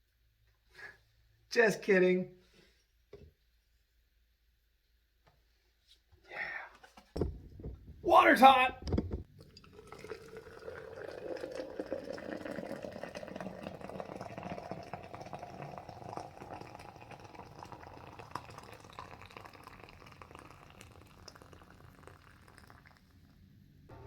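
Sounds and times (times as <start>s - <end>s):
hot water pouring into vessel: 9.4s - 23.4s.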